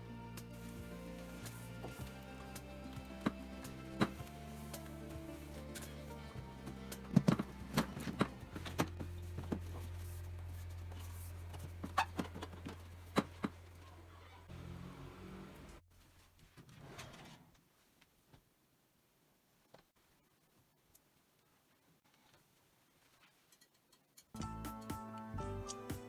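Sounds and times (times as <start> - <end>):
background music with held tone: 0.0 - 11.6, 24.4 - 26.0
steady low hum: 0.0 - 15.8.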